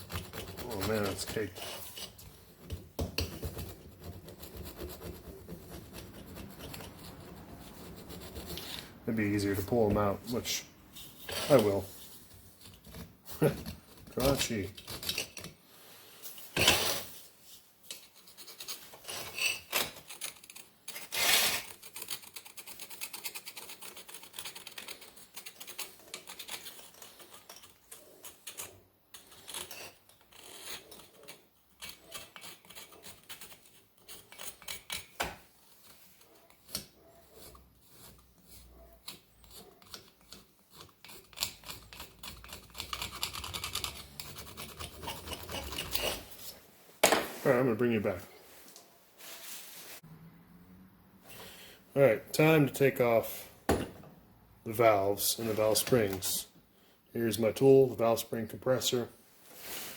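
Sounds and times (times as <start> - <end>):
screwdriver scraping metal: 0.0 - 8.9, 12.6 - 15.6, 17.9 - 35.2, 35.9 - 46.5.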